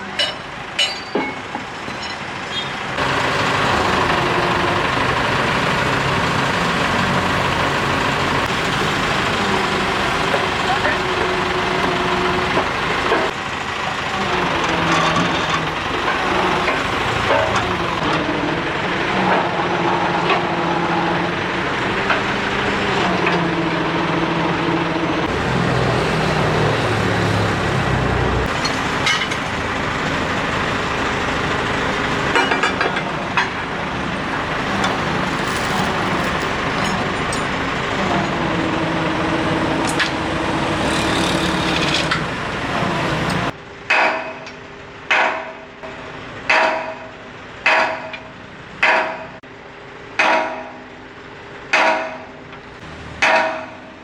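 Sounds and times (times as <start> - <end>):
heavy diesel machinery running: 0.0 - 54.0
sharp metal knocks: 43.9 - 45.7, 46.5 - 49.4, 50.2 - 50.8, 51.7 - 52.3, 53.2 - 53.9.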